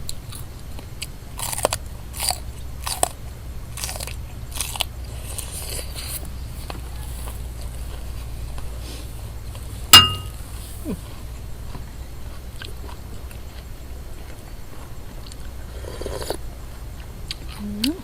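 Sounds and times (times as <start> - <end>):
spoon clinking on bowl: 10.0 - 10.4
quiet chewing: 10.6 - 18.0.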